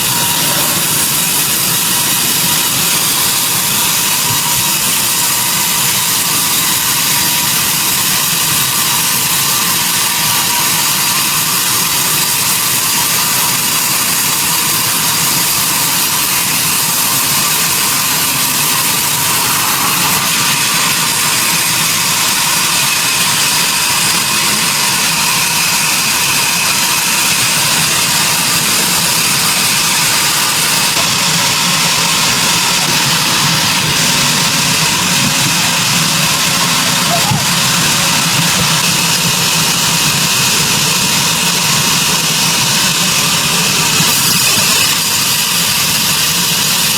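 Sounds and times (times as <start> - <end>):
sawmill machinery running: 0.0 - 46.9.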